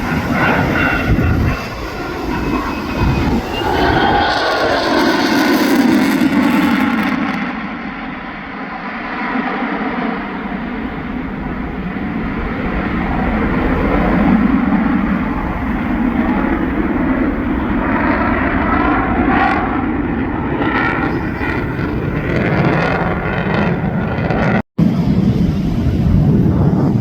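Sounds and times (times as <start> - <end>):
jet engine roar: 0.0 - 27.0.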